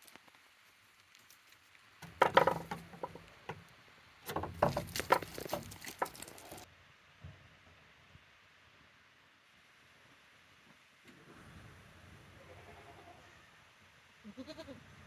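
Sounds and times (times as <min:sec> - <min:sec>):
goats knocking and scuffling: 0:01.2 - 0:03.7, 0:04.3 - 0:06.7.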